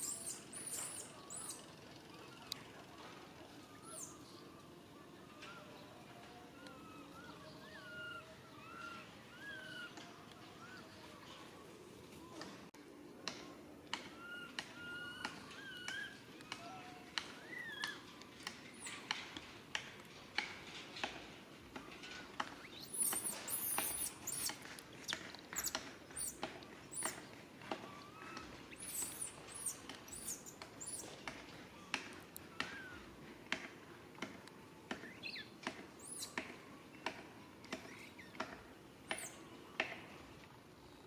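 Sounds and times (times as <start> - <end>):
baby monkey chirping calls: 0.0 - 1.6, 14.2 - 16.2, 22.7 - 27.2, 28.2 - 31.1, 36.0 - 36.4, 39.1 - 39.4
baby monkey shrill squeals: 22.8 - 24.5, 28.7 - 31.0.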